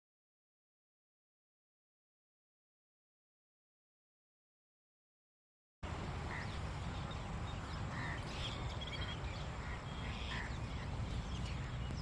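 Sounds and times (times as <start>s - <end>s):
birds chirping: 5.8s - 12.0s.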